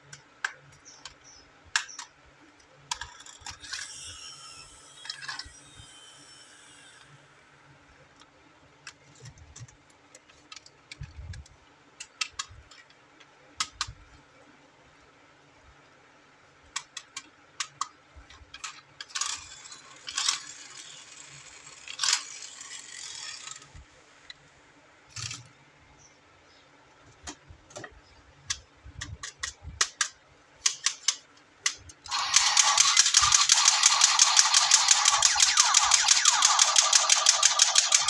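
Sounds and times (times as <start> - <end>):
plastic toy parts clicking: 0.1 - 4.0, 8.8 - 14.0, 16.7 - 23.8, 28.4 - 38.0
toy rattling buzz: 32.1 - 38.0.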